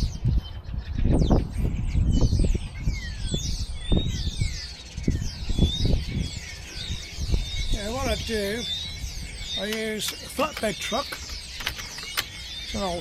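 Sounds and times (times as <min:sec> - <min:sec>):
small birds chirping: 0:00.0 - 0:13.0
knocks and handling sounds: 0:09.7 - 0:12.3.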